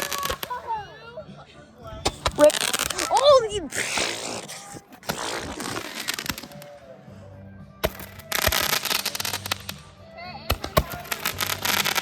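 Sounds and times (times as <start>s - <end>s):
fireworks crackling and hissing: 0.0s - 0.8s, 2.1s - 6.8s, 7.8s - 9.9s, 10.5s - 12.0s
firework sharp pops: 2.1s - 6.8s, 7.8s - 9.8s.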